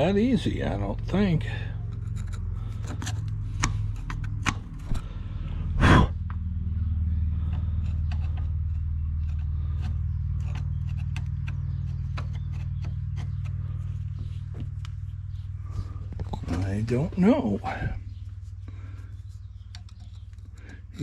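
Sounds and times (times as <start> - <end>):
steady low hum: 0.0 - 21.0
loud breathy burst: 5.1 - 6.2.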